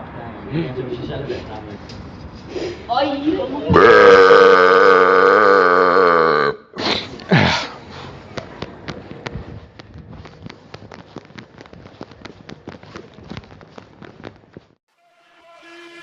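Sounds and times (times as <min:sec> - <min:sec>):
person burping: 0:03.7 - 0:07.7.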